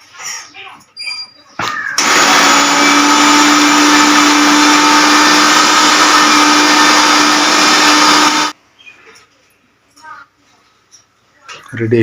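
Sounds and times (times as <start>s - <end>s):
mixer grinder whirring: 2.0s - 8.6s.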